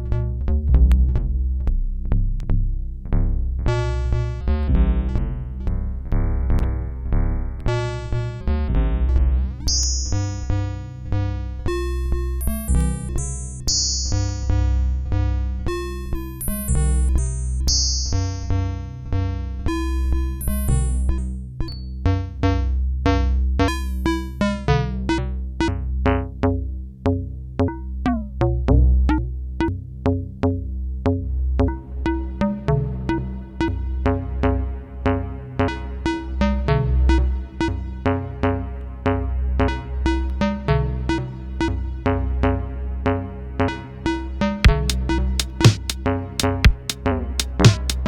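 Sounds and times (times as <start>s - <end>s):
steady low bass: 0.0s - 13.3s, 14.1s - 37.6s, 44.7s - 48.0s
regular clicks: 44.7s - 48.0s.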